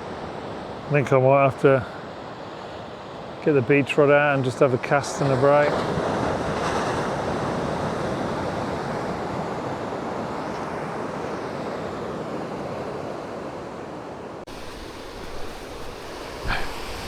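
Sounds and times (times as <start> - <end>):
ocean surf washing ashore: 0.0 - 17.0
wind on microphone: 14.5 - 17.0.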